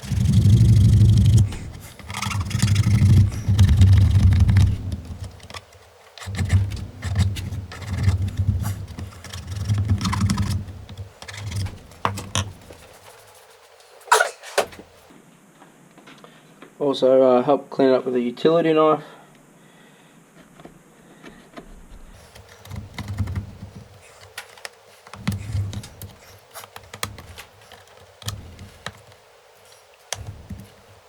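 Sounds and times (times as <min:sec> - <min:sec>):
hand file rasping on plastic: 0:00.0 - 0:15.0, 0:22.2 - 0:29.2.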